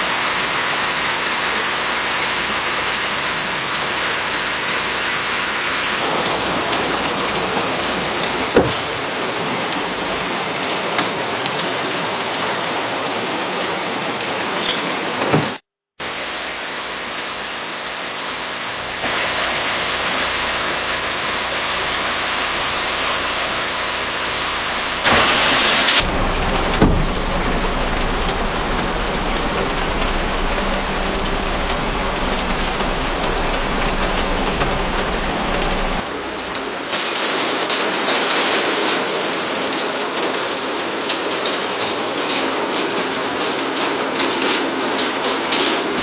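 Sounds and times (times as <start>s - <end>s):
rain hitting a window: 0.0s - 46.0s
steady low rumble: 19.0s - 36.1s.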